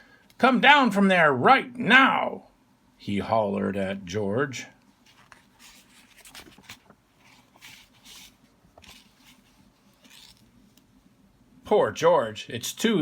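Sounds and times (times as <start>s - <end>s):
paper rustling: 5.0s - 10.5s.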